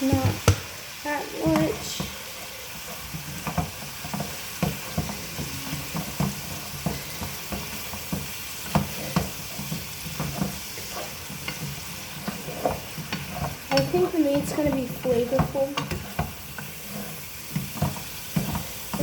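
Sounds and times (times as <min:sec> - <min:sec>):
meat sizzling in a frying pan: 0:00.0 - 0:19.0
utensil scraping a pan: 0:00.0 - 0:19.0.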